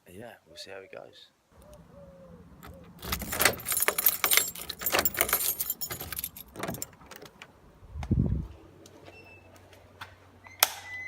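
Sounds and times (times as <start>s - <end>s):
metal jingling and clinking: 2.6s - 7.2s.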